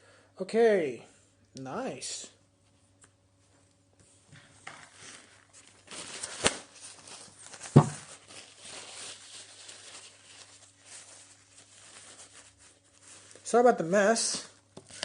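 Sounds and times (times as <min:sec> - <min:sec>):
packaging rustling and scraping: 0:04.6 - 0:13.6, 0:14.2 - 0:15.0.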